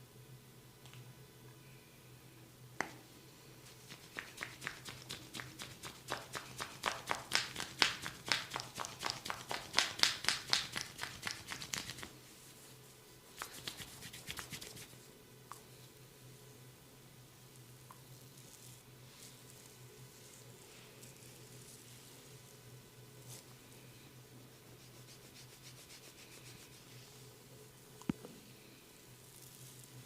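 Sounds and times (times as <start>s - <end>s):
hands slapping on head: 3.8s - 12.1s, 13.4s - 14.9s.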